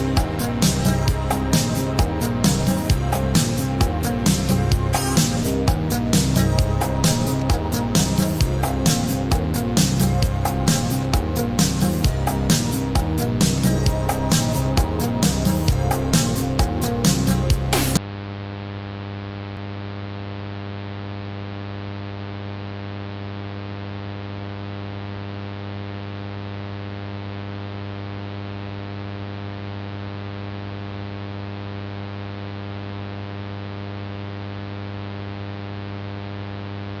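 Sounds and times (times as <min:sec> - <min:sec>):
music: 0:00.0 - 0:18.0
electrical hum: 0:00.0 - 0:18.9.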